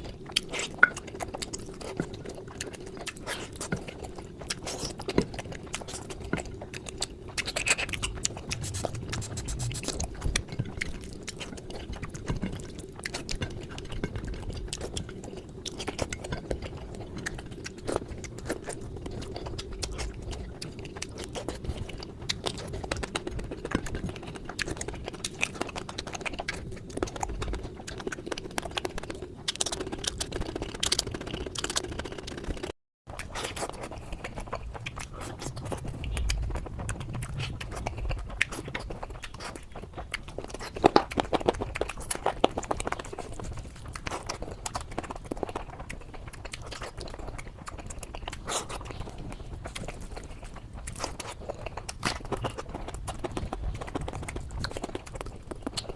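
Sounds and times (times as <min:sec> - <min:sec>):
chewing and crunching: 0:00.0 - 0:55.9
mouth clicks and smacks: 0:04.5 - 0:55.9
low hum: 0:05.3 - 0:22.1, 0:34.4 - 0:39.8.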